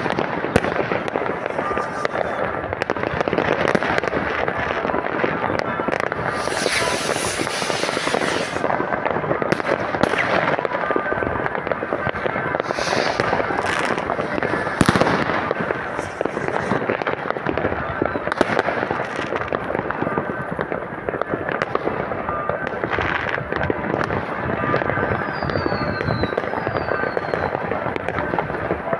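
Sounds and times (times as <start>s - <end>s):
loud firework bangs: 0.0s - 20.7s
fireworks crackling: 0.0s - 28.9s.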